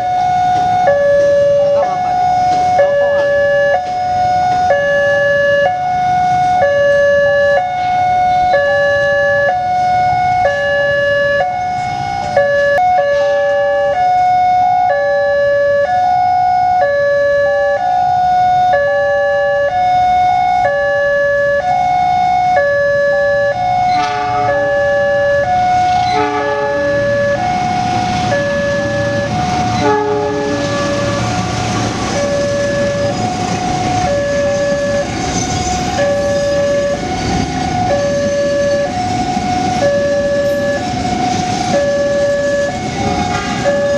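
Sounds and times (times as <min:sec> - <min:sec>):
train rumble: 0:00.0 - 0:14.0, 0:23.6 - 0:43.9
second crossing siren: 0:00.0 - 0:43.9
two-tone crossing siren: 0:00.0 - 0:43.9.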